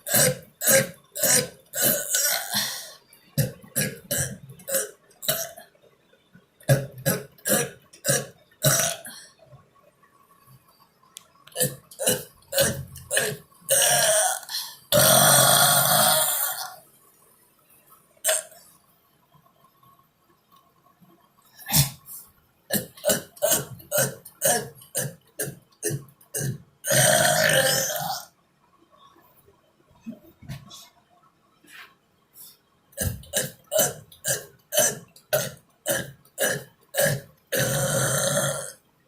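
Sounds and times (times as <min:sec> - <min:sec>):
person burping: 0:00.0 - 0:05.7, 0:06.7 - 0:09.4, 0:11.5 - 0:16.8, 0:18.2 - 0:18.6, 0:22.7 - 0:28.4, 0:33.0 - 0:38.8.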